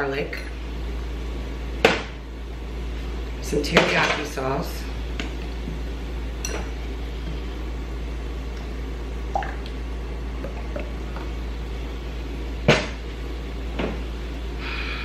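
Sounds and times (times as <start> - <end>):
low hum: 4.8 - 15.0.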